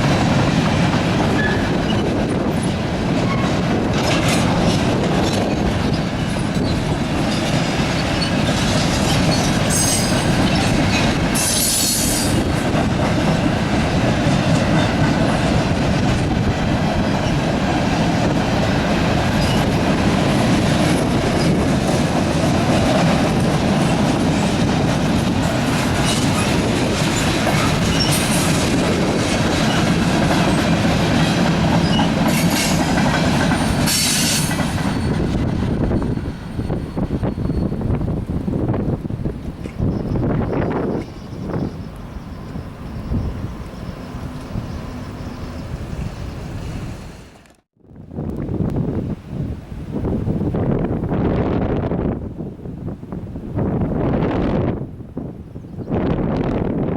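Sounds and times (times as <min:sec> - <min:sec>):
wheels clattering on rails: 0:00.0 - 0:46.4
freight train rumbling past: 0:00.0 - 0:56.9
high-pitched wheel squeals: 0:35.9 - 0:38.0.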